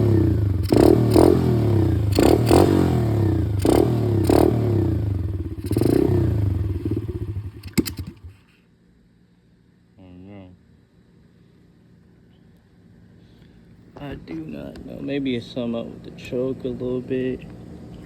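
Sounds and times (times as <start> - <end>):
engine throttle blips: 0.0 - 8.3
dirt bike engine idling: 0.0 - 8.4.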